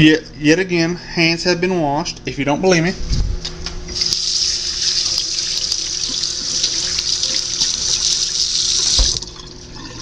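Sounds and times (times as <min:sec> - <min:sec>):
bowl being rinsed: 0:04.0 - 0:10.0
faucet running into sink: 0:04.0 - 0:10.0.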